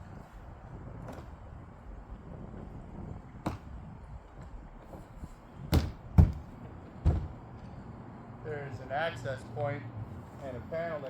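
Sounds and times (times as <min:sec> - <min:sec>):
prop panels knocking together: 0:04.8 - 0:07.4.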